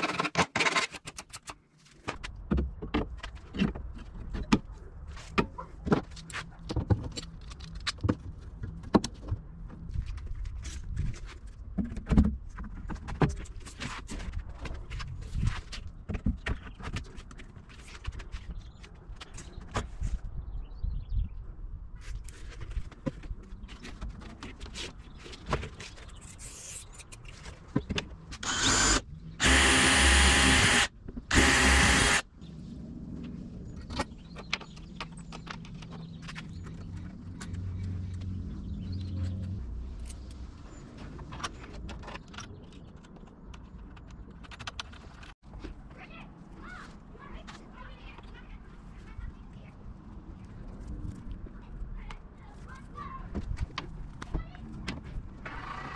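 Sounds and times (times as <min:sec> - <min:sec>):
power tool running: 0:28.4 - 0:32.2.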